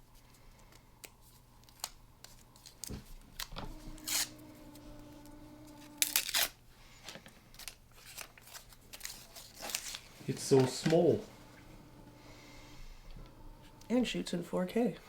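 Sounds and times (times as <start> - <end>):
steady low tone: 3.6 - 6.2, 10.3 - 14.4
handling clicks and rustles: 7.1 - 12.0.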